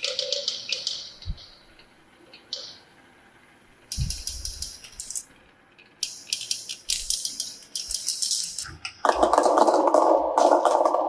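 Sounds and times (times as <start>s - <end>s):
marbles clicking along a track: 3.9s - 5.3s, 5.9s - 11.0s
marbles rolling rattle: 6.9s - 11.0s.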